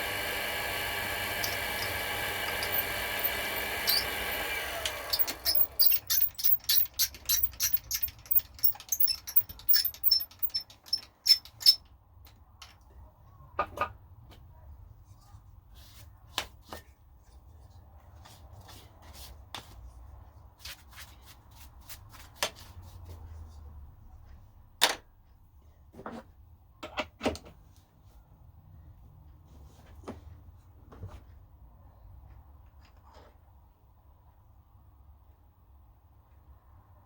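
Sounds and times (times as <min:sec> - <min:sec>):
metal tools clicking and knocking: 0:01.4 - 0:04.1, 0:05.1 - 0:11.9.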